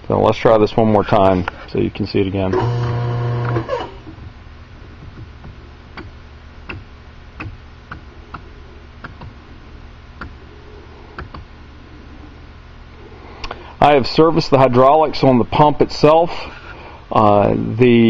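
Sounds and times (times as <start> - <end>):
hydraulic crimping tool hum: 2.5 - 4.2.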